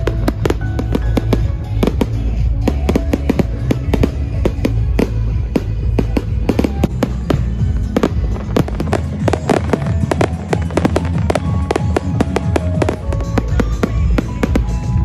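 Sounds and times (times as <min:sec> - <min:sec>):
fireworks bangs and crackles: 0:00.0 - 0:15.0
music with steady bass: 0:00.0 - 0:15.0.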